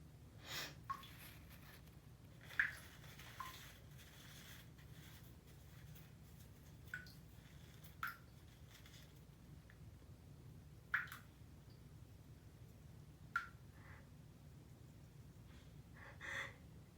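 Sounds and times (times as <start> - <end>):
water dripping and splashing: 0.8 - 9.8, 10.9 - 11.8.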